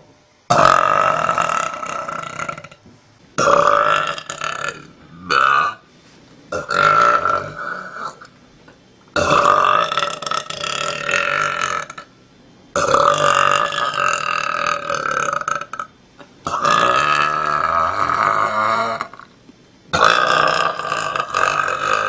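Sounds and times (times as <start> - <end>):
woman burping: 6.6 - 8.3, 20.0 - 22.0.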